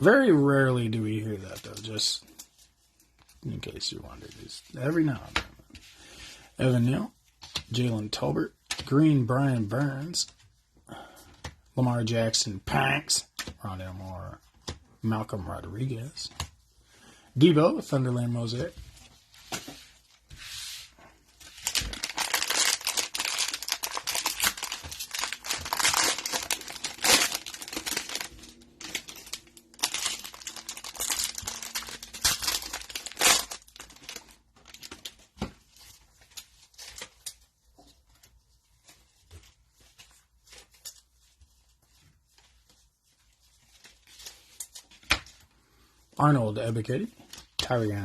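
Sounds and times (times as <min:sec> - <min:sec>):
cards rustling and clicking: 0:21.3 - 0:45.4
cellophane wrapper crinkling and tearing: 0:21.4 - 0:37.5.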